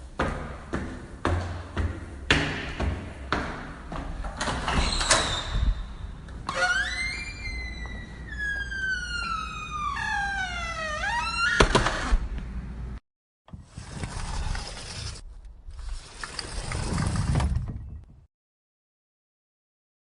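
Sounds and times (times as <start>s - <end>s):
door hinges creaking: 4.3s - 12.4s.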